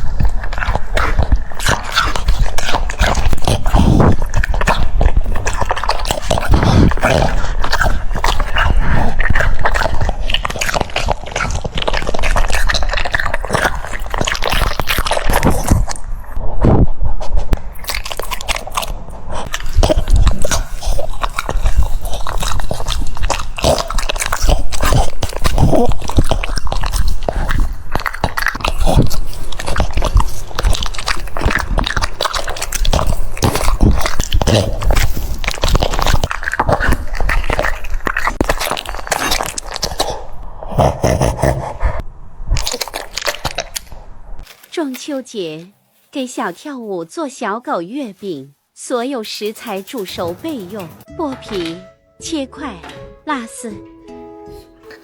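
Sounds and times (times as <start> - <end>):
dog chewing crunchy food: 0.0 - 16.4, 17.3 - 41.4, 42.6 - 44.7.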